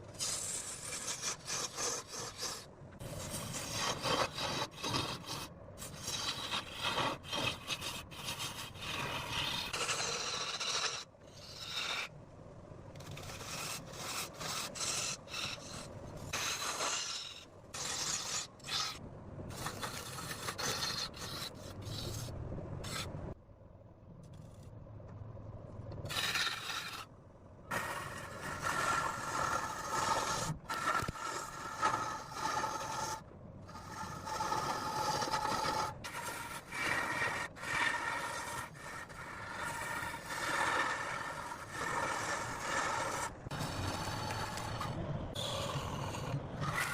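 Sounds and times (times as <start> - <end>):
turning tool scraping wood on lathe: 0.2 - 12.1, 13.0 - 19.0, 19.6 - 23.1, 26.1 - 27.1, 27.7 - 46.9.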